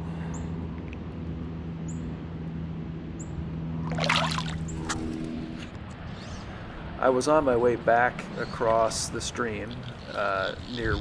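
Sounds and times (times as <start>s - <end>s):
steady low hum: 0.0s - 11.0s
water splashing and sloshing: 3.8s - 5.4s.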